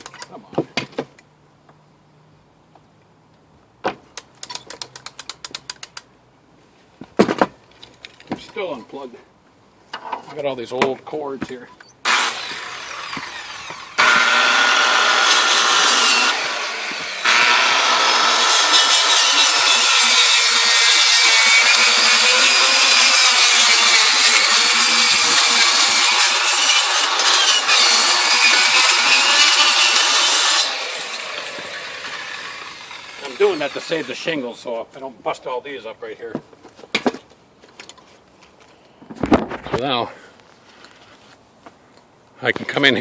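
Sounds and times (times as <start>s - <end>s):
power saw cutting wood: 12.0s - 34.5s.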